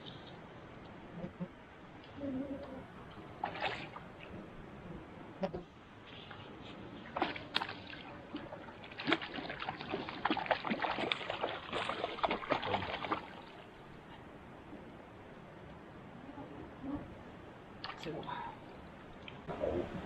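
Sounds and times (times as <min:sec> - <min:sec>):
water splashing and sloshing: 0:03.1 - 0:04.6, 0:06.0 - 0:14.2, 0:17.7 - 0:19.5.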